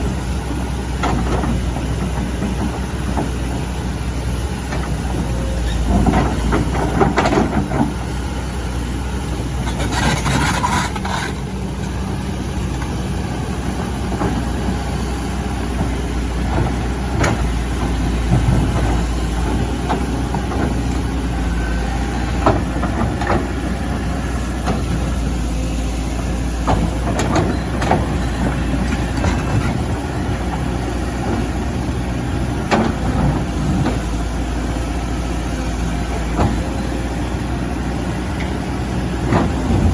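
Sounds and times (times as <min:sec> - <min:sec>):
excavator diesel engine running: 0:00.0 - 0:39.9
knocks and clanks: 0:04.7 - 0:08.0, 0:26.6 - 0:31.6.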